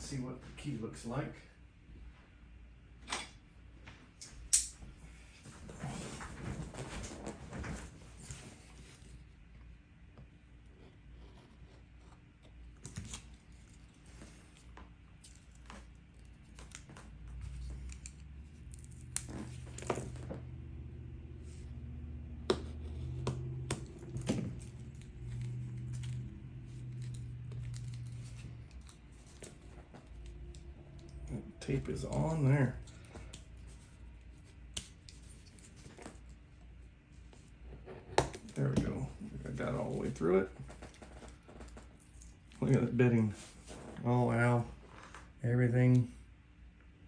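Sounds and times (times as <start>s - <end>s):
low hum: 10.4s - 45.8s.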